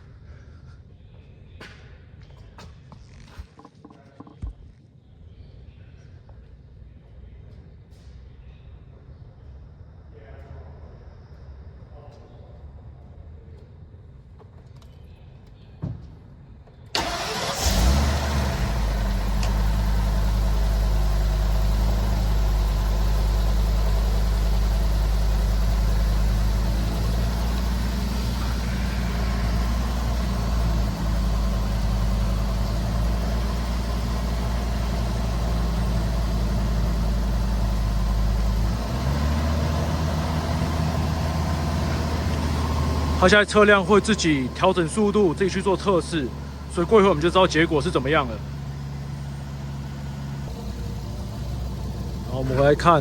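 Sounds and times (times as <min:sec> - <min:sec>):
engine starting and idling: 0:16.9 - 0:53.0.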